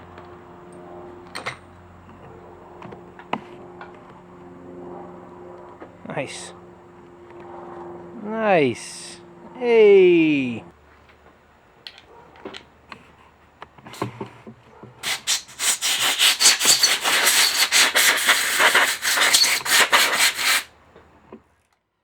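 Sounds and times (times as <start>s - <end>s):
scrubbing on hard surface: 15.0s - 20.7s.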